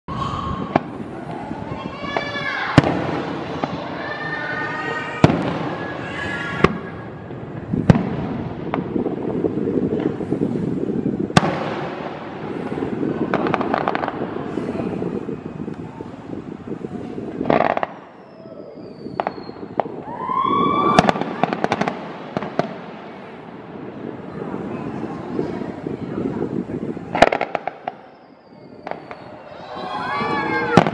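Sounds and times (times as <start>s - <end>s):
firework crackling: 0.1s - 30.9s
falling firework whistle: 17.5s - 22.0s, 27.3s - 30.9s.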